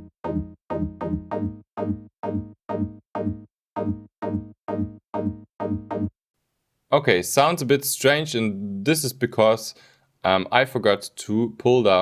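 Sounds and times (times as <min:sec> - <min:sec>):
synth pluck notes: 0:00.0 - 0:06.2.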